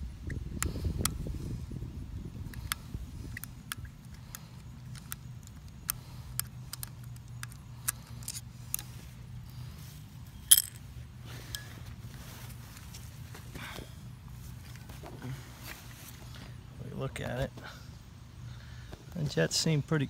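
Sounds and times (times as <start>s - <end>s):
steady low hum: 0.0s - 20.0s
metallic clicks of small parts: 2.5s - 8.9s, 10.4s - 10.8s.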